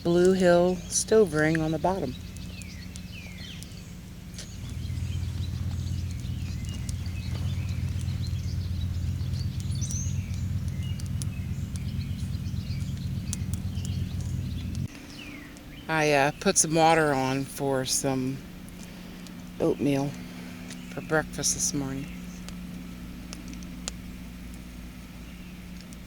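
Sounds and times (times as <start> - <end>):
birds chirping: 0.0 - 26.0
faint wood fire crackles: 0.0 - 26.0
steady low rumble: 0.0 - 26.0.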